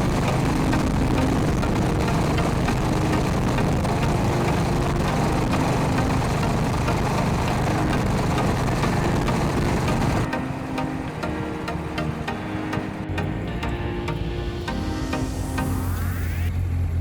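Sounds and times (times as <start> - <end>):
motorcycle engine running: 0.0 - 10.3
wind noise: 0.0 - 12.2.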